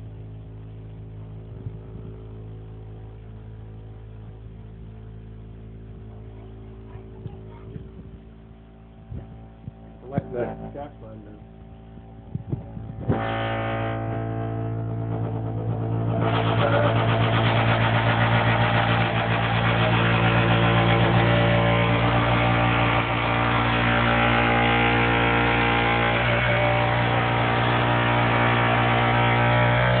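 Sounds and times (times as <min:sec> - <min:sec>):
boiler droning hum: 0:00.0 - 0:30.0
harsh buzzing noise: 0:06.7 - 0:30.0.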